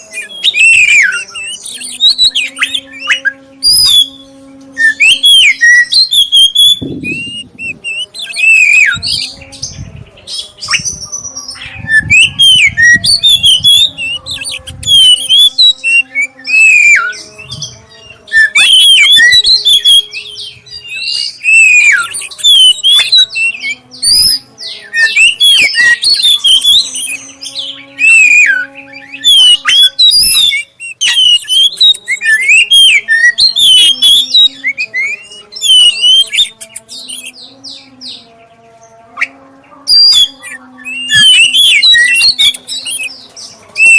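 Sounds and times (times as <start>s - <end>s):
bird singing: 0.0s - 43.9s.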